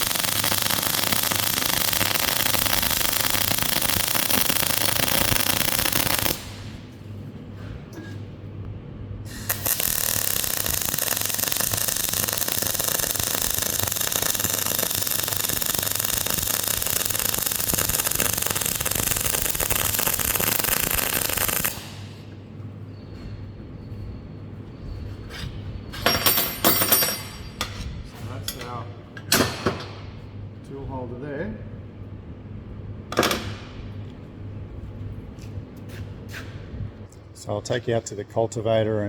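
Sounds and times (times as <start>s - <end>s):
arc welding crackling hiss: 0.0s - 6.8s, 9.3s - 22.2s
ringing metal clinks: 26.0s - 27.8s.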